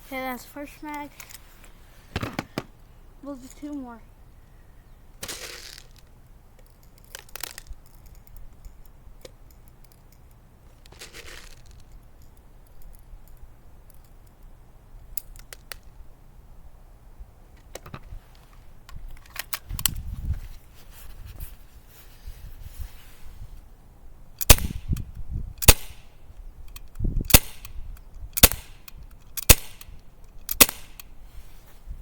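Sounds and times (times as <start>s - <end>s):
small metallic clicks: 5.6s - 16.0s, 24.4s - 31.2s.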